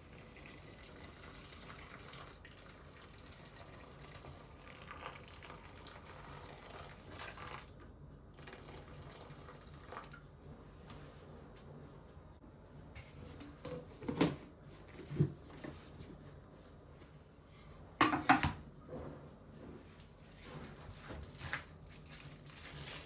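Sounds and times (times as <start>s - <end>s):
tap water running into sink: 0.0s - 7.7s.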